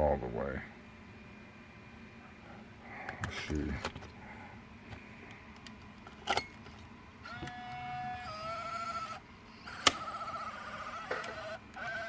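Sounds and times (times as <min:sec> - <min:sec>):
camcorder motor whine: 0:07.2 - 0:12.0
camcorder mechanism click: 0:07.3 - 0:12.0.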